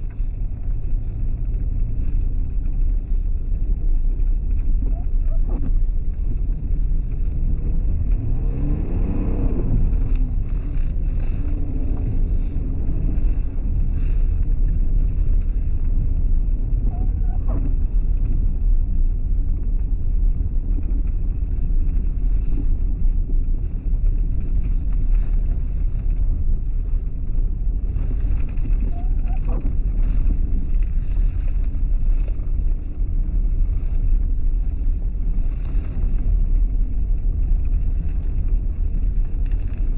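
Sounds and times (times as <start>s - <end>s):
road traffic rumble: 0.0s - 39.9s
vehicle accelerating: 7.1s - 14.6s.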